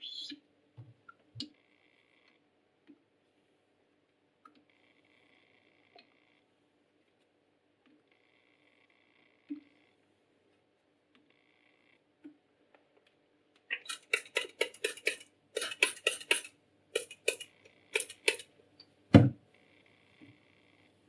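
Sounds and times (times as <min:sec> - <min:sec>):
razor scraping on sharpening stone: 0:13.8 - 0:18.4.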